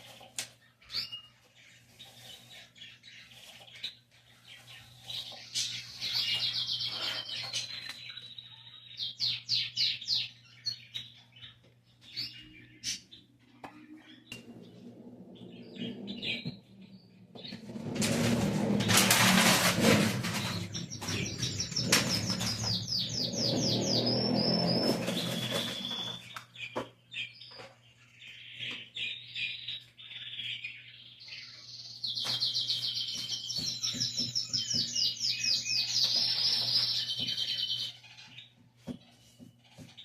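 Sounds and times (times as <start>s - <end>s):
songbirds chirping: 0.0s - 40.0s
household cleaning clattering: 14.4s - 26.3s.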